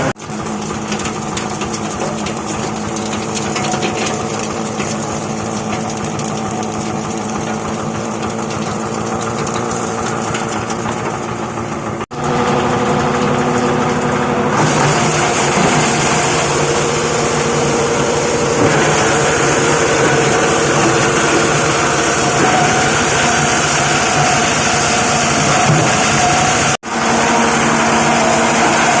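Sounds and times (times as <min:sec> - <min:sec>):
plastic crusher machine drone: 0:00.0 - 0:29.0.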